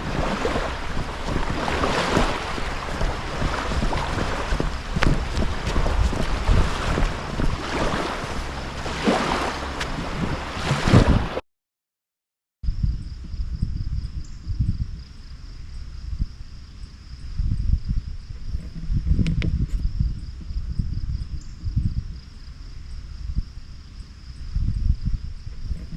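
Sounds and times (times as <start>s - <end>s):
wind buffeting microphone: 0.0s - 11.4s, 12.7s - 23.8s, 24.4s - 25.9s
high insect trill: 12.7s - 25.9s.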